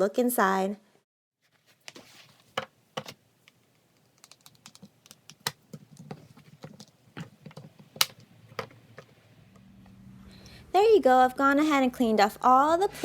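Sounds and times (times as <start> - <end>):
hands clicking plastic egg: 3.0 - 9.1.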